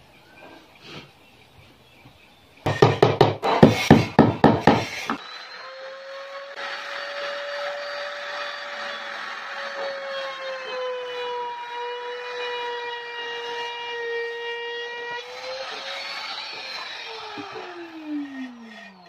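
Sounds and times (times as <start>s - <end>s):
sharp knocks on wood: 2.7s - 5.2s
power tool whining: 2.7s - 19.0s.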